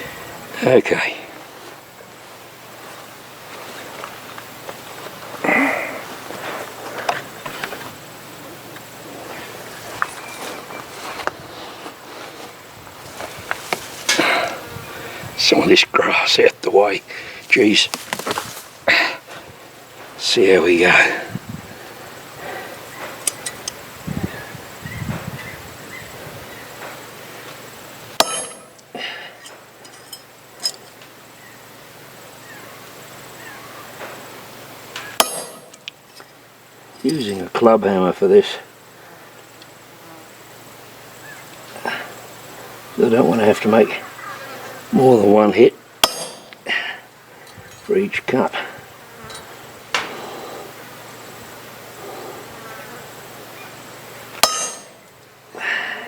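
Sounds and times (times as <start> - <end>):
light metallic clinks: 9.8 - 10.8, 23.1 - 23.8, 28.2 - 31.1, 35.0 - 37.5, 46.0 - 46.7, 47.4 - 47.9, 49.2 - 50.0, 54.4 - 55.4
hammer striking chisel on metal: 28.2 - 28.9, 35.2 - 35.9, 46.0 - 46.6, 54.4 - 55.1.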